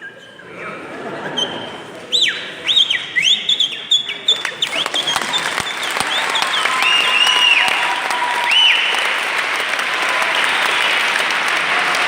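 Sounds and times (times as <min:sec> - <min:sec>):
loud human whistle: 0:02.1 - 0:11.4
crowd applauding: 0:04.2 - 0:12.0.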